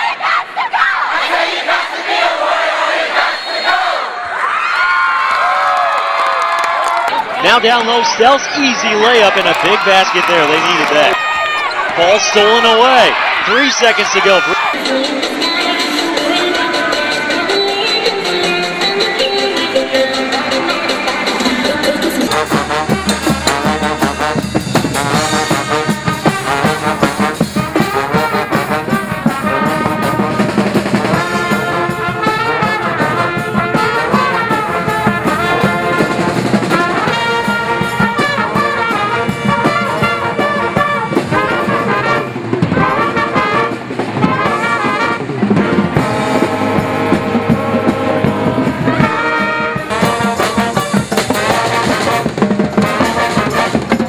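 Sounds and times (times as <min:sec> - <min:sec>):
brass music: 0:07.4 - 0:54.0.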